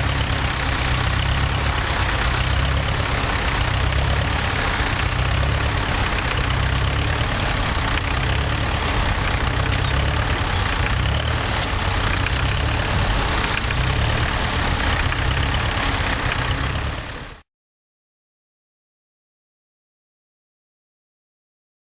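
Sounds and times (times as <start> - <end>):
tractor engine rumbling: 0.0 - 17.4.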